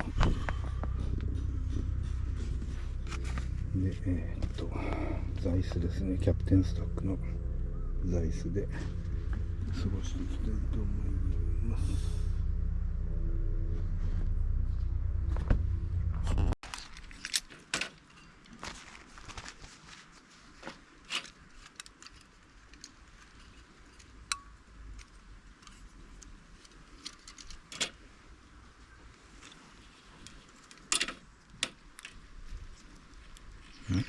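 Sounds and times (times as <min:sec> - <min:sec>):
low hum: 0:00.0 - 0:16.6.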